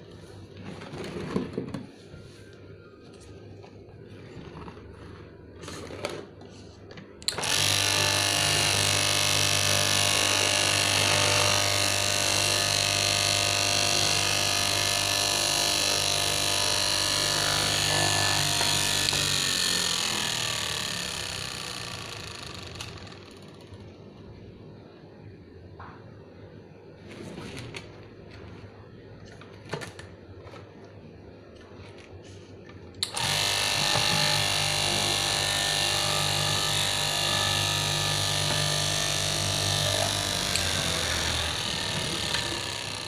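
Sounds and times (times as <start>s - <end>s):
electric cutting machine humming: 7.3s - 23.4s, 33.0s - 43.0s.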